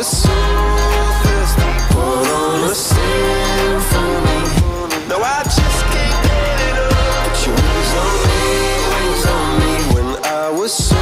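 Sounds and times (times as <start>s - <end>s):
pop song with sung vocals: 0.0s - 11.0s.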